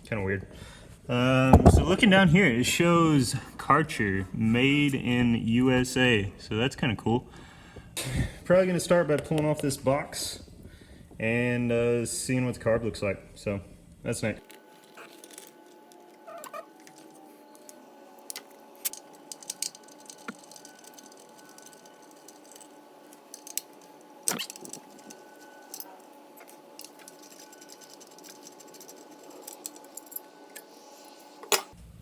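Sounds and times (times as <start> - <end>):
faint steady hum: 0.0 - 32.0
tool clicks and rattles: 18.3 - 30.7.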